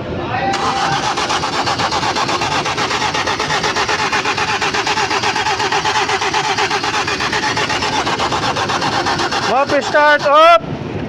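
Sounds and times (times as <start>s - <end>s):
engine cranking on starter motor: 0.5s - 10.6s.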